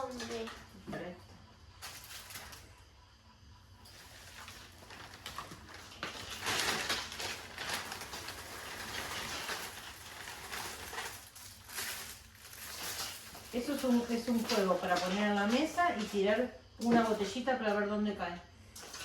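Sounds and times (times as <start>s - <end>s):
packaging rustling: 3.9s - 16.2s.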